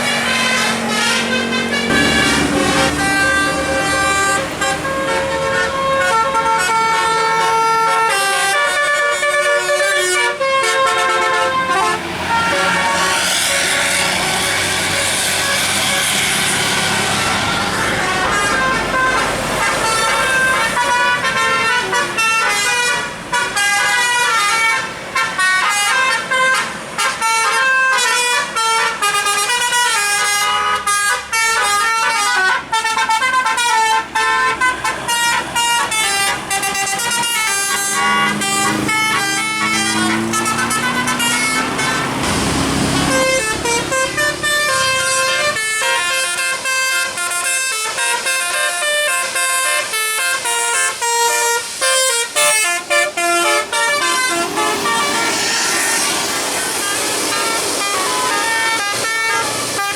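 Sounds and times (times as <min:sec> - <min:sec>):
bus musical air horn melody: 0:00.0 - 0:59.9
lower rising tone: 0:01.9 - 0:05.1, 0:54.0 - 0:57.0.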